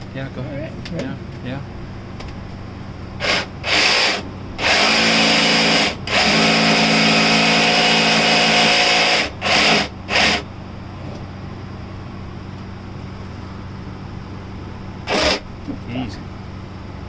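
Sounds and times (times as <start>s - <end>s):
jigsaw cutting: 3.2s - 10.4s, 15.1s - 15.4s.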